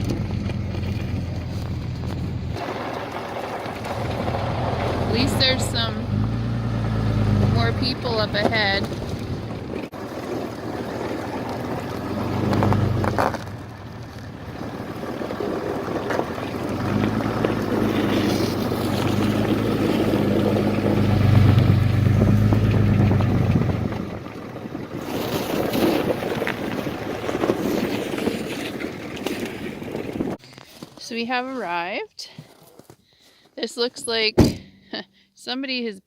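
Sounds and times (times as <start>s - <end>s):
truck engine hum: 0.0s - 30.4s
tyre noise on ice: 9.9s - 23.4s, 25.0s - 31.1s.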